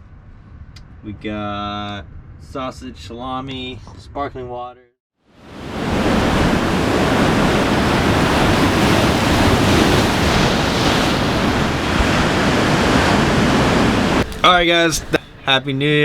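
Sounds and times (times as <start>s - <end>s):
ocean surf: 5.4s - 15.5s
wind buffeting the microphone: 5.7s - 15.4s.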